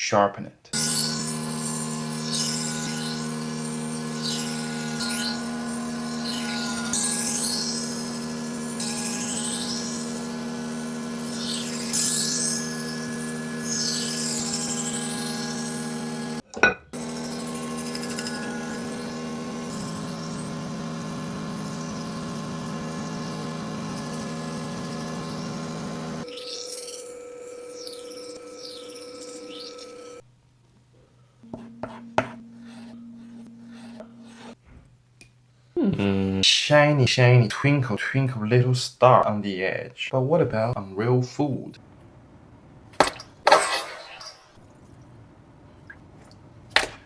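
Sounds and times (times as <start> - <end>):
knife blade grinding strokes: 0.8 - 16.4, 17.0 - 30.2, 31.5 - 34.6
powered knife sharpener humming: 0.8 - 30.2, 31.5 - 34.6.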